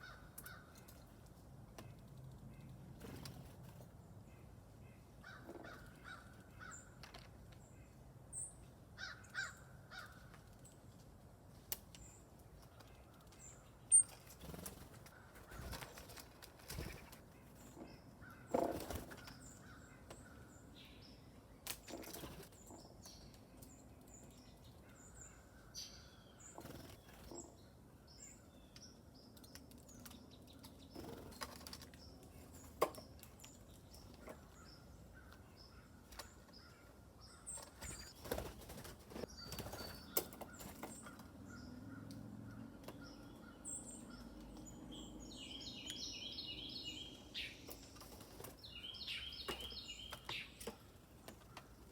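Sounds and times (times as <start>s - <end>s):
small songbirds chirping: 0.0s - 51.9s
wing flutters: 37.6s - 40.9s.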